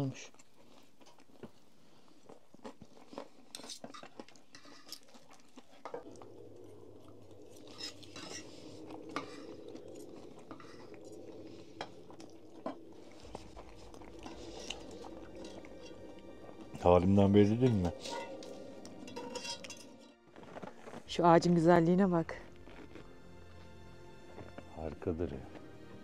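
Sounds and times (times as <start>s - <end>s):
faint steady hum: 4.6s - 24.4s.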